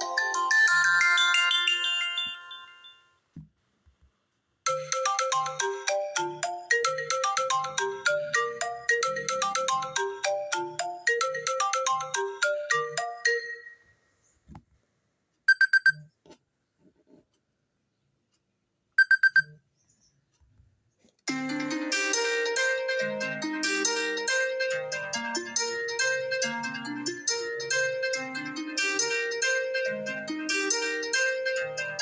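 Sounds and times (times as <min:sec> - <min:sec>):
chiming phone ringtone: 0:00.0 - 0:03.2, 0:04.7 - 0:14.0, 0:15.5 - 0:16.0, 0:19.0 - 0:19.6, 0:21.3 - 0:32.0
alert tone beeps: 0:15.5 - 0:16.1, 0:19.0 - 0:19.6.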